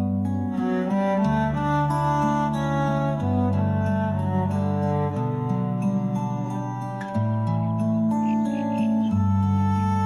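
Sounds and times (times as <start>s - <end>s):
slow bowed string music: 0.0s - 10.0s.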